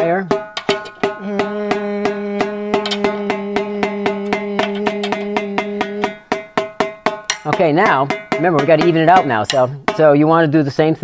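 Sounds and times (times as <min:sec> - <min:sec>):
snare drum head tapping: 0:00.1 - 0:10.2
person singing a held note: 0:01.2 - 0:06.2.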